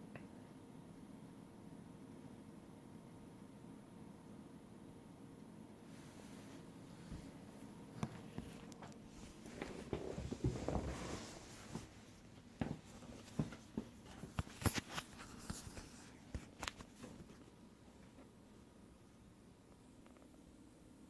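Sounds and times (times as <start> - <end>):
rustling and scraping: 6.0 - 17.5.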